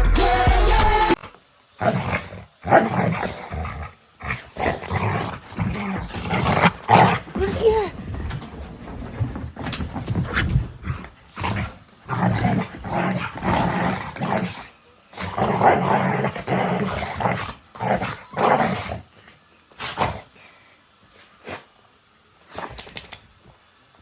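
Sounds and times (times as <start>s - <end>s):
dog growling: 1.8s - 19.1s.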